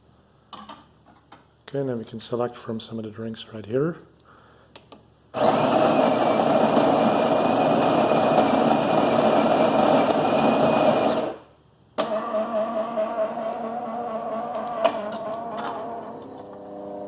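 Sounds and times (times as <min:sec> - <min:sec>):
coffee grinder whirring: 0:05.4 - 0:11.4, 0:12.0 - 0:17.0
quiet motor hum: 0:11.5 - 0:17.0.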